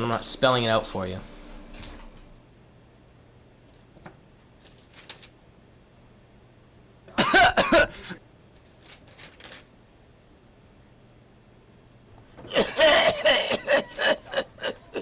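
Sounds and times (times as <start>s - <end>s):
person coughing: 7.1s - 8.2s, 12.4s - 15.0s.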